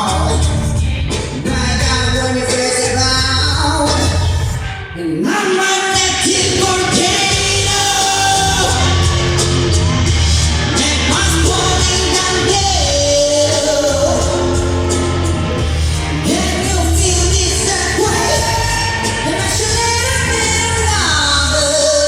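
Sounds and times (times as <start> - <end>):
bass line: 0.0 - 4.9, 5.9 - 22.0
person singing lead vocal: 0.0 - 22.0
pop song over sound system: 0.0 - 22.0
audience shouting along: 5.9 - 21.8.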